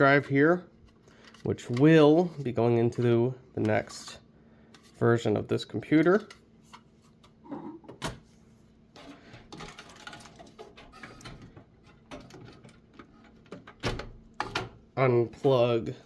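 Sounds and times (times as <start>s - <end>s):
computer parts clicking and knocking: 9.5s - 14.8s.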